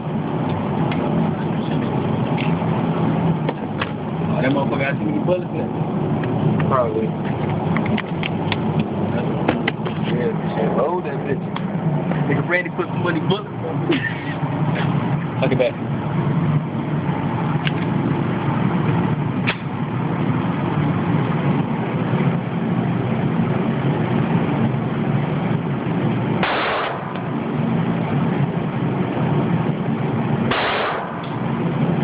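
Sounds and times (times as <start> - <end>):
low background drone: 0.0 - 32.0
handgun shots: 26.4 - 27.1, 30.5 - 31.3.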